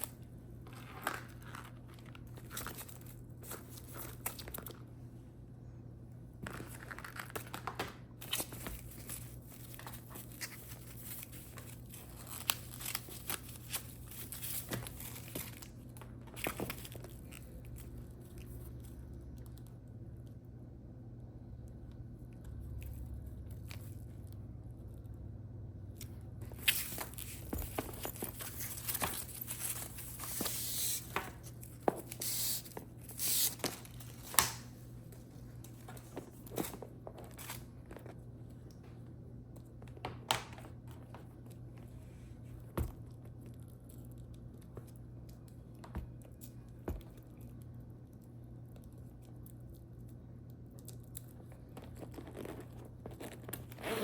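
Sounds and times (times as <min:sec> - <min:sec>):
packaging rustling and tearing: 0:06.4 - 0:18.5, 0:26.5 - 0:34.7.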